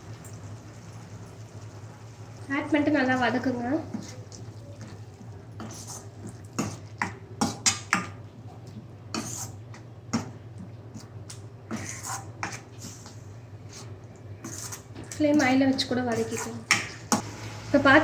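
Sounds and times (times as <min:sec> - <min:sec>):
utensil scraping a pan: 0:05.6 - 0:06.8, 0:09.1 - 0:10.3, 0:11.0 - 0:17.2.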